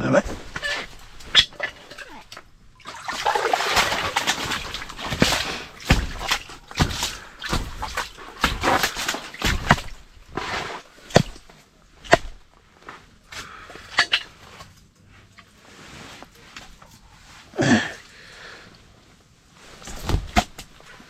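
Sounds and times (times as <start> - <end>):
rustling scrape: 0.2 - 2.4, 3.7 - 11.5, 14.2 - 17.5
sharp knocks: 4.4 - 10.0.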